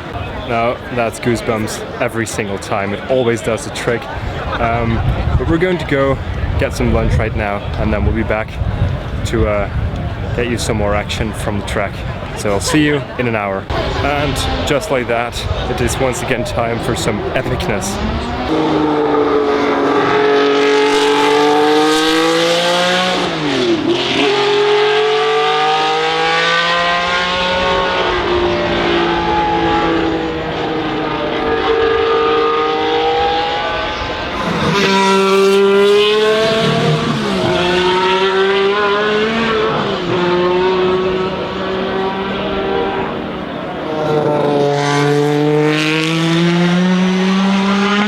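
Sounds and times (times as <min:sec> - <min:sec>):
racing car engines revving: 0:00.0 - 0:48.0.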